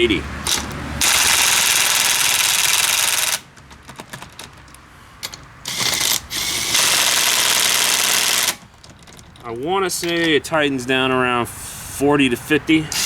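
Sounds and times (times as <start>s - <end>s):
impact wrench hammering: 0.4s - 4.6s, 5.2s - 8.9s.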